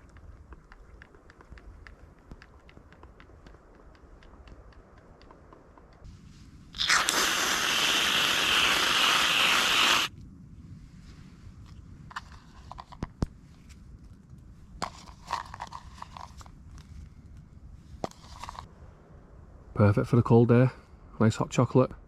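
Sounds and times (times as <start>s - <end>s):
light clicks and taps: 0.0s - 6.1s
whipped cream aerosol spraying: 6.8s - 10.1s.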